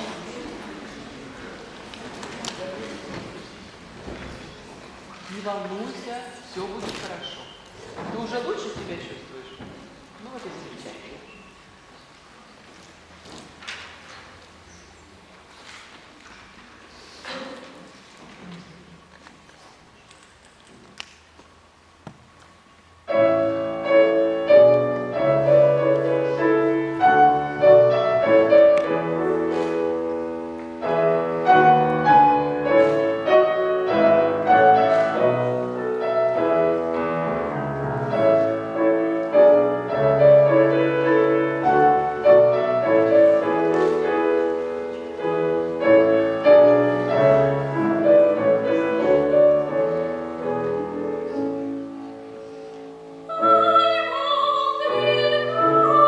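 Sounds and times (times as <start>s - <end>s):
classical piano: 23.0s - 56.0s.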